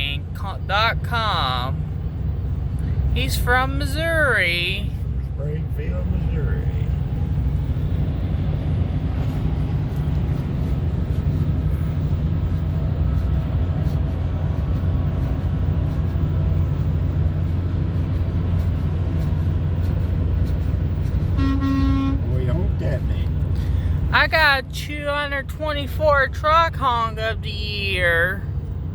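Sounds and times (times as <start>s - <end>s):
vehicle engine rumble: 0.0s - 28.9s.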